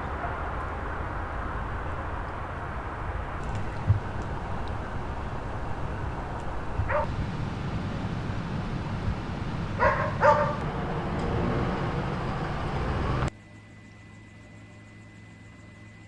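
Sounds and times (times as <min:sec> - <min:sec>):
steady low rumble: 0:00.0 - 0:13.3
dog barking: 0:06.8 - 0:07.1, 0:09.8 - 0:10.7.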